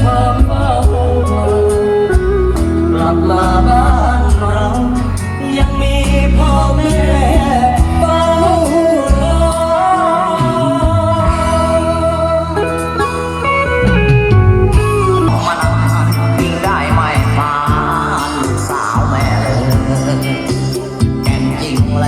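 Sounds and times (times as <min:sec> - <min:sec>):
solo singer: 0:00.0 - 0:13.5, 0:14.7 - 0:22.0
heavy bass beat: 0:13.8 - 0:22.0.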